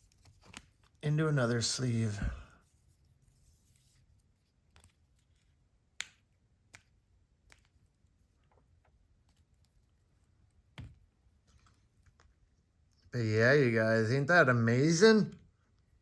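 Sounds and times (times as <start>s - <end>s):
plastic card sleeves handled: 0.0s - 1.1s, 2.7s - 13.0s.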